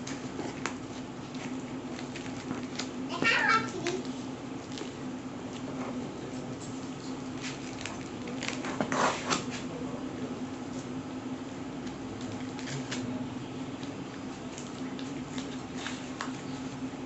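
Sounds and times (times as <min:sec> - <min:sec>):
papers and packaging rustling: 0:00.0 - 0:05.0, 0:07.3 - 0:09.6, 0:11.9 - 0:13.2, 0:13.8 - 0:16.8
steady low hum: 0:00.0 - 0:17.0
packaging crackling: 0:00.6 - 0:03.0, 0:07.4 - 0:08.9.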